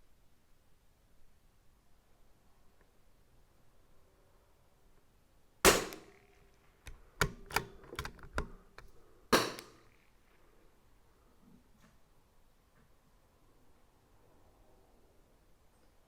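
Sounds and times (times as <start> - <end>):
rifle bolt metallic clicks: 5.7 - 6.3, 6.9 - 9.9
rifle shots: 5.7 - 8.5, 9.4 - 10.0.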